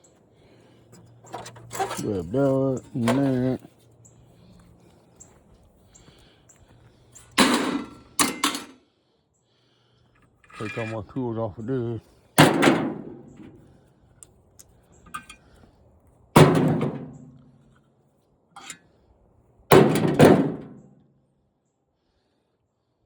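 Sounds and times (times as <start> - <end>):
tools thunking down hard: 0.9 - 3.6, 7.2 - 8.8, 12.4 - 13.6, 15.1 - 15.4, 16.4 - 17.4, 19.7 - 20.8.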